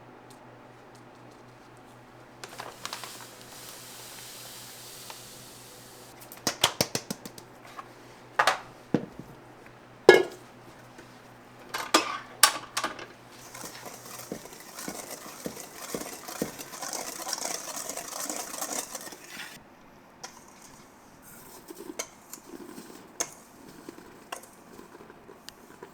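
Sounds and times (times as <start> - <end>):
hiss: 2.5 - 6.2
metal kitchenware clattering: 7.7 - 9.4, 10.1 - 19.6.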